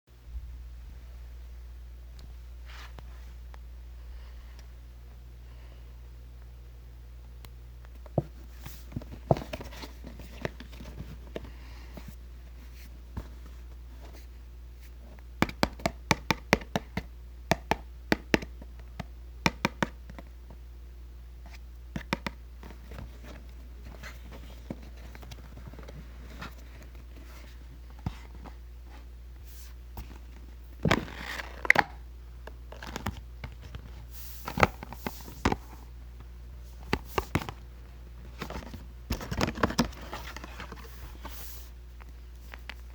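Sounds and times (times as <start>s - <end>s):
steady low hum: 0.1s - 42.9s
plastic and cardboard crinkling: 22.0s - 35.9s, 36.6s - 42.9s.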